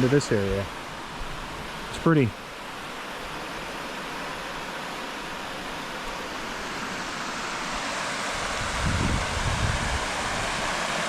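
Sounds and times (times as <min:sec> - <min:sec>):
waterfall rushing: 0:00.0 - 0:11.0
wind buffeting microphone: 0:08.4 - 0:10.6.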